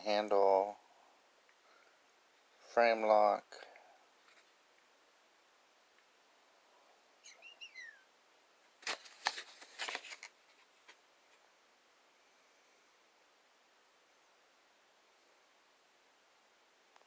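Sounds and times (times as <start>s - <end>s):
high bird chirps: 7.2s - 8.1s.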